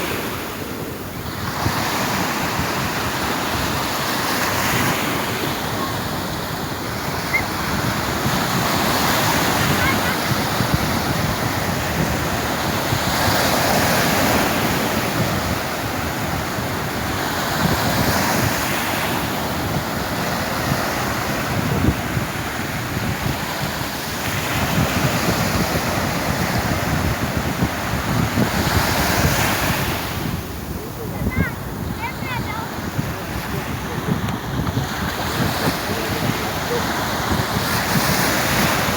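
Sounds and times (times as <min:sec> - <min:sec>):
sea waves breaking on shore: 0:00.0 - 0:38.9
wind buffeting microphone: 0:00.0 - 0:38.9.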